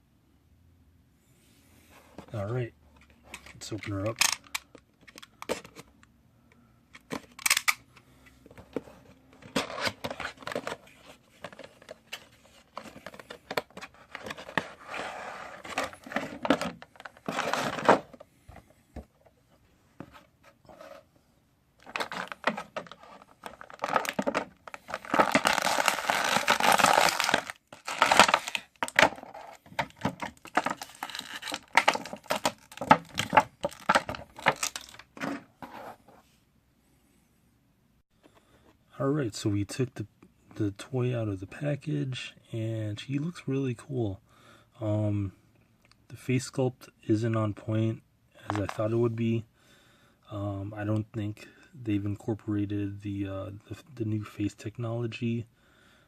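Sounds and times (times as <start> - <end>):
packaging tearing and crinkling: 12.8 - 18.0, 21.8 - 35.0.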